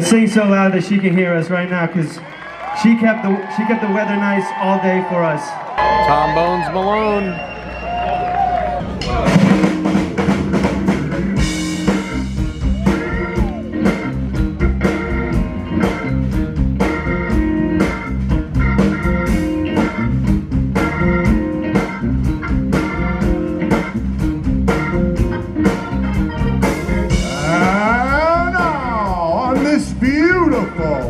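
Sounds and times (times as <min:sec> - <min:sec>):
blues guitar: 0:05.8 - 0:31.0
drum kit beat: 0:08.7 - 0:31.0.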